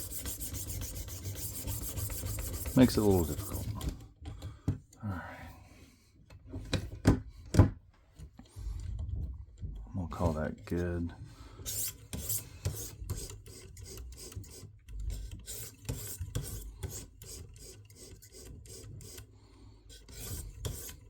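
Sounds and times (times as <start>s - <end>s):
sharpening stone rasping on knife: 0.0s - 3.7s, 19.9s - 21.0s.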